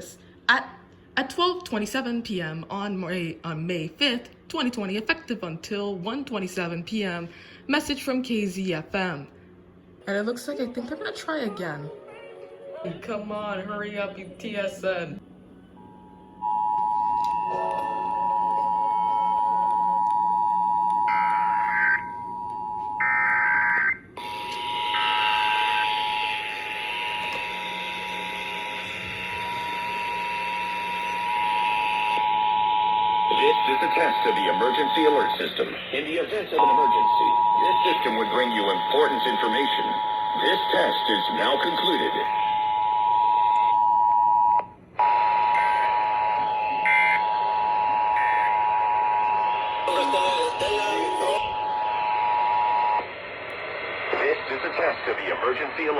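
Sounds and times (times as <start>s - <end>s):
two-tone alert buzzing: 15.8s - 35.5s, 36.6s - 53.0s.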